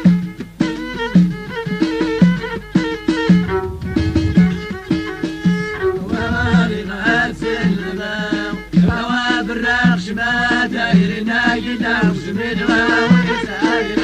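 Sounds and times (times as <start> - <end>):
low repeating beat: 3.4 - 7.6
voices singing folk song: 5.7 - 14.0.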